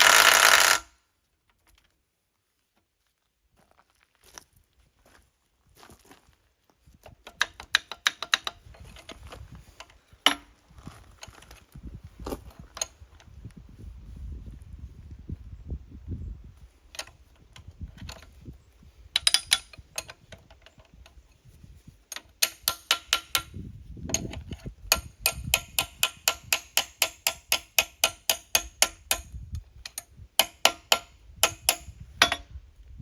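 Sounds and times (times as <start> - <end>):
ratchet wrench clicking: 19.2 - 20.1, 22.4 - 23.6, 24.2 - 32.4.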